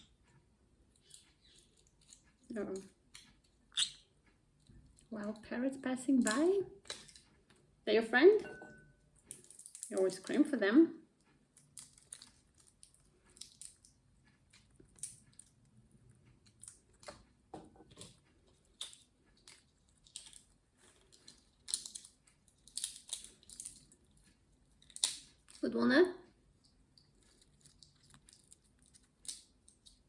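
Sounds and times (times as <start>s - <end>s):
parrot beak crunching nuts: 9.3s - 10.0s, 11.6s - 15.5s, 18.6s - 24.0s, 24.6s - 25.6s, 27.0s - 30.0s.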